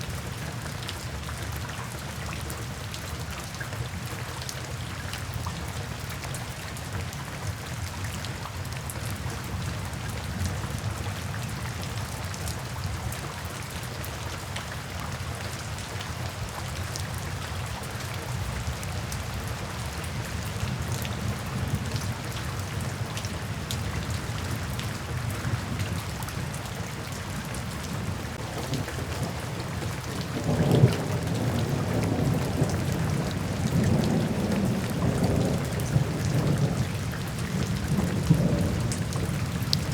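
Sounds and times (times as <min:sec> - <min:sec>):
steady rain falling: 0:00.0 - 0:39.9
low rumble of thunder: 0:18.3 - 0:39.9.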